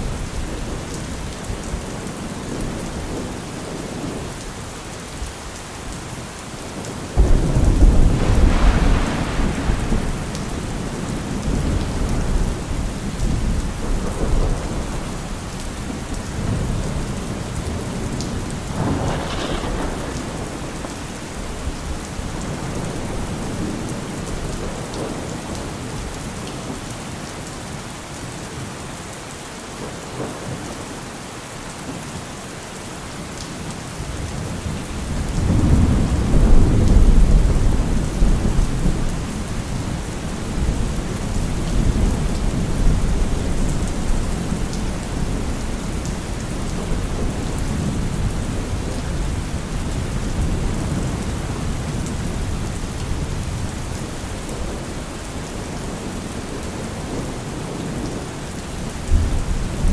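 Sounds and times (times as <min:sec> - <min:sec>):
steady rain falling: 0:00.0 - 0:59.9
sharp thunderclap: 0:07.2 - 0:15.0, 0:18.7 - 0:23.8
rolling thunder: 0:07.2 - 0:25.3, 0:35.0 - 0:54.9.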